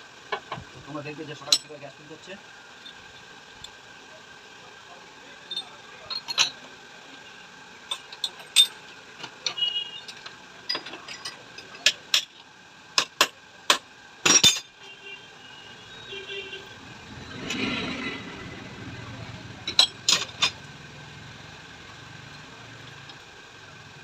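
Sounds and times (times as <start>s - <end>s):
metal tools clinking: 5.4s - 6.7s, 7.9s - 8.8s, 9.5s - 12.4s, 14.3s - 14.7s, 19.7s - 20.6s.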